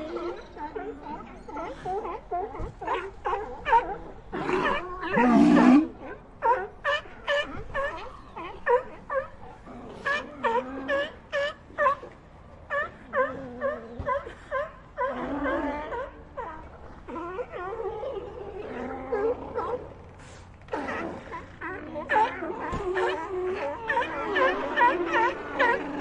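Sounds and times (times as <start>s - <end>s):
sea lions barking: 0.0s - 26.0s.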